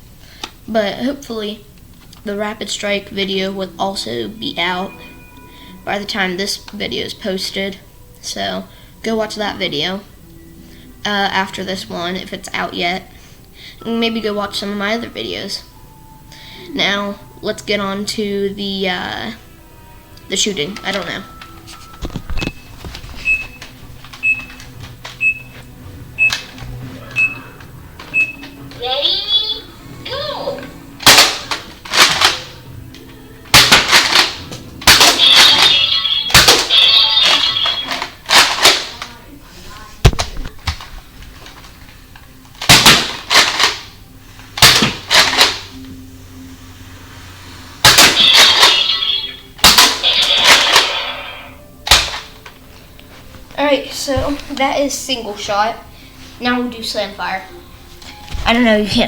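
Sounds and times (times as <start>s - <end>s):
toy blaster plastic clacks: 31.0s - 32.6s, 33.6s - 39.1s, 42.6s - 43.9s, 44.6s - 45.7s, 47.9s - 51.1s
toy blaster air pops: 33.6s - 37.7s, 47.8s - 52.2s.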